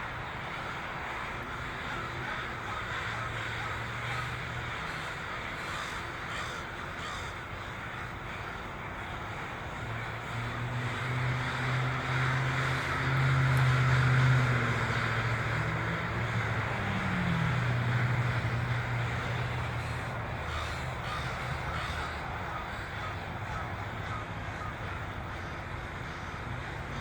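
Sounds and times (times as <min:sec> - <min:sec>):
flock of crows cawing: 0:00.0 - 0:27.0
low engine drone: 0:07.2 - 0:27.0.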